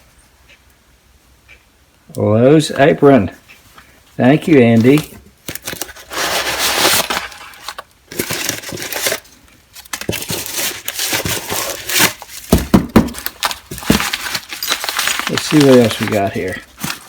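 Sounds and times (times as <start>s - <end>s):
wrapping and fabric rustling: 4.2s - 12.5s, 13.1s - 17.0s
items knocking and clinking in box: 8.1s - 9.2s, 10.0s - 17.0s
thumps in box: 12.5s - 15.2s.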